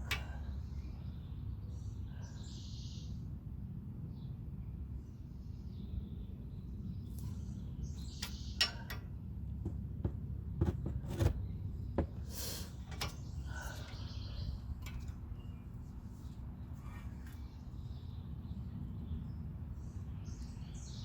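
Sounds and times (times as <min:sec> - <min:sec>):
steady low hum: 0:00.0 - 0:21.0
tools clicking and knocking: 0:08.2 - 0:11.4, 0:12.9 - 0:14.0.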